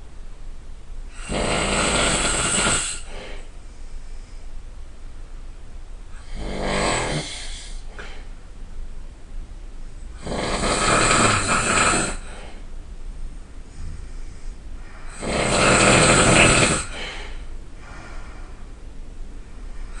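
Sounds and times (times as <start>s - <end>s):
person snoring loudly: 1.1s - 3.2s, 6.2s - 7.8s, 10.2s - 12.4s, 15.1s - 17.3s
quiet breathing: 1.1s - 5.1s, 7.2s - 8.5s, 11.4s - 20.0s.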